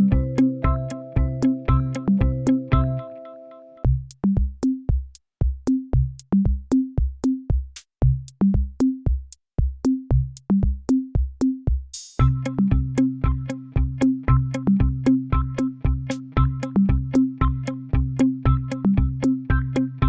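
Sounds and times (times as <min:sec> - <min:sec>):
drum machine beat: 0:00.0 - 0:03.0, 0:03.9 - 0:20.0
keyboard chords: 0:00.0 - 0:03.9, 0:12.2 - 0:20.0.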